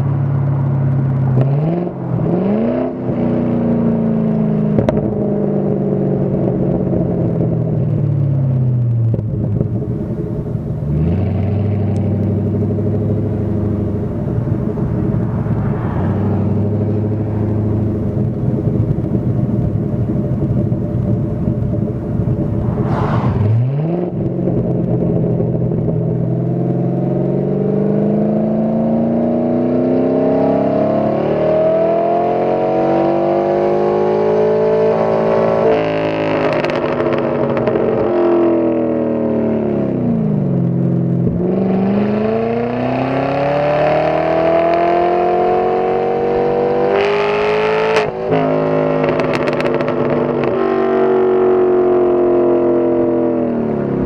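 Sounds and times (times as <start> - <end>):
car engine revving: 0.0 - 8.0, 8.6 - 54.0.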